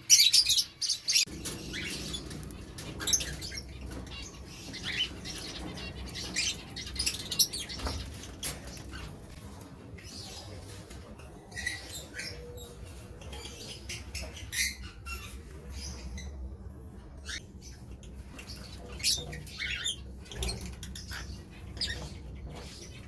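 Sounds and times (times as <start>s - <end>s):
lovebirds squeaking and chirping: 0.0s - 23.0s.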